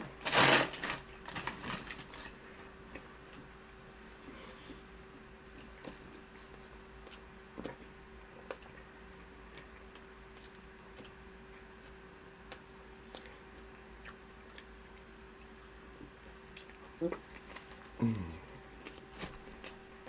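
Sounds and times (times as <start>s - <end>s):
faint steady hum: 0.0s - 20.0s
person chewing and biting: 12.4s - 19.8s.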